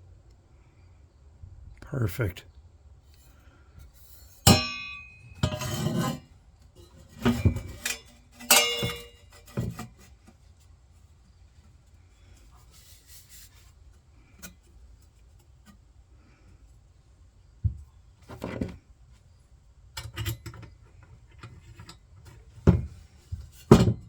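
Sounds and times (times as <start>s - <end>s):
metal scraping on workbench: 3.8s - 10.2s
metal parts clanking: 7.1s - 9.8s.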